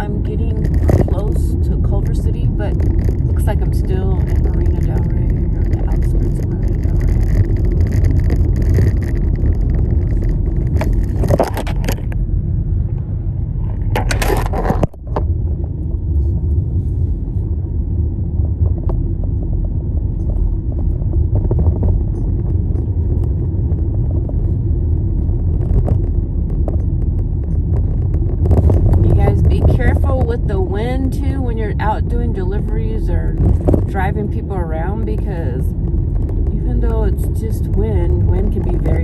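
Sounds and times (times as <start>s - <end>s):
road and engine rumble: 0.0s - 39.0s.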